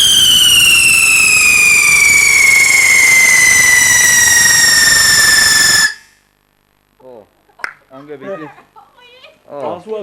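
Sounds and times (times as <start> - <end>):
whistling firework: 0.0 - 6.2.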